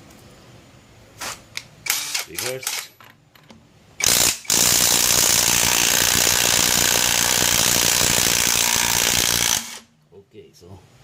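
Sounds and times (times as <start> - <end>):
impact wrench hammering: 4.0 - 9.8.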